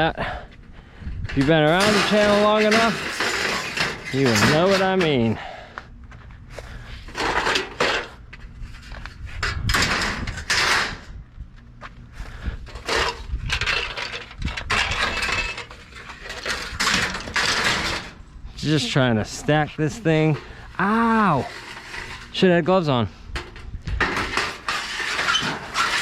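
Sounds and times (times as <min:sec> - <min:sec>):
low steady hum: 0:00.0 - 0:25.2
metal scrap clanking: 0:01.4 - 0:05.2, 0:12.8 - 0:18.2.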